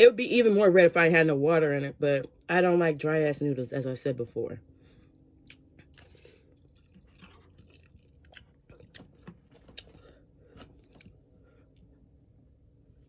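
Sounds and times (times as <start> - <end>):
mouth chewing noodles: 5.4 - 11.8.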